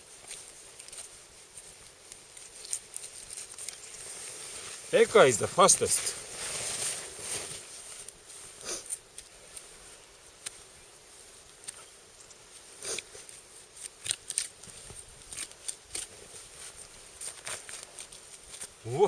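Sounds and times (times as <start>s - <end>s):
knife scraping and rustling: 12.9s - 18.8s.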